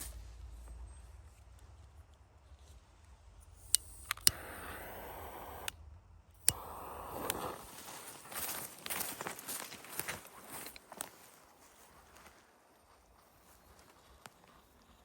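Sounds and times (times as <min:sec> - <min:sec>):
fuse hissing: 0:03.6 - 0:05.7, 0:06.4 - 0:08.6
lighter clicks: 0:03.6 - 0:05.8, 0:06.4 - 0:07.8.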